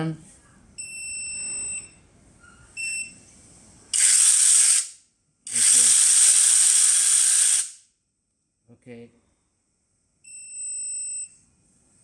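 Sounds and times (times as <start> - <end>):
chainsaw whirring: 3.9 - 4.9, 5.5 - 7.8.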